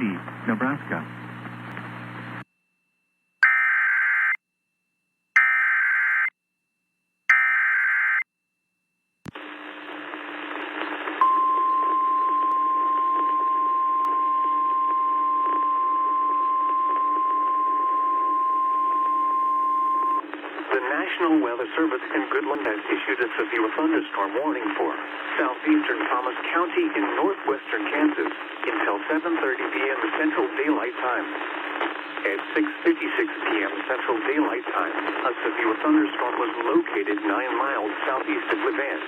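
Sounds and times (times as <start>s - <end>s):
radio hiss: 0.0s - 2.4s, 9.3s - 11.2s, 20.2s - 39.0s
radio click: 1.4s - 1.9s, 9.3s - 9.5s.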